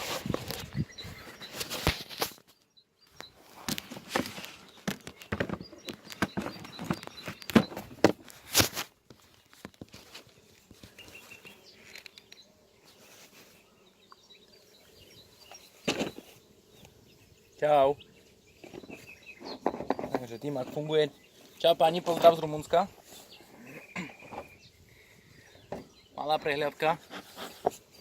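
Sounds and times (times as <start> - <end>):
faint birds chirping: 0.0 - 28.0
knocks and rustles: 3.6 - 11.1, 15.5 - 16.4, 18.6 - 20.9.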